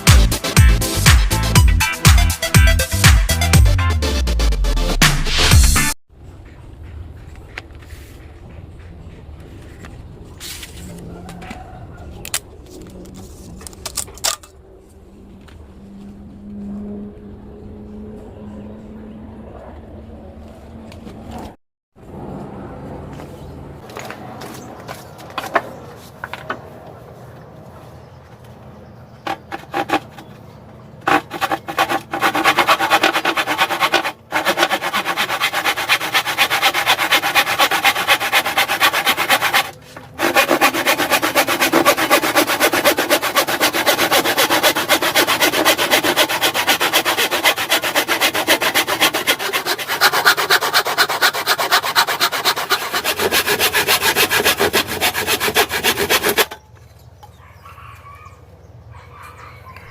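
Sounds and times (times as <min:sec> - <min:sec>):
hand saw cutting wood: 0:29.2 - 0:30.3, 0:31.0 - 0:56.6.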